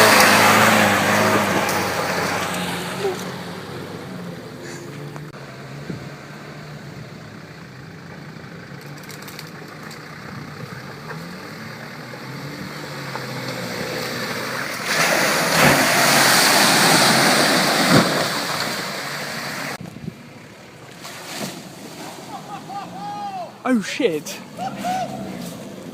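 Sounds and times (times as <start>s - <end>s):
off-road engine running: 0.0s - 21.8s, 22.5s - 25.9s
splashing water and mud: 13.6s - 19.8s.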